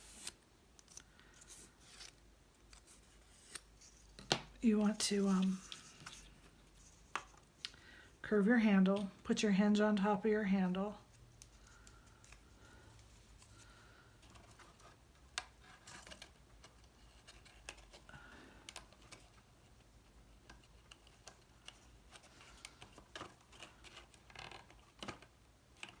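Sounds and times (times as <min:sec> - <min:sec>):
cardstock rustling and clicking: 0:11.1 - 0:26.0.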